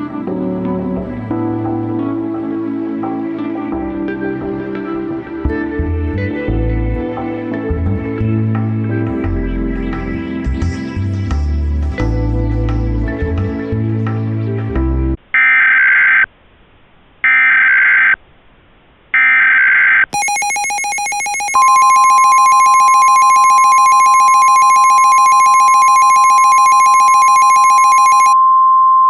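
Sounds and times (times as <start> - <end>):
buzzy alarm tone: 20.2 - 28.4
steady single-pitched warning tone: 20.2 - 28.5.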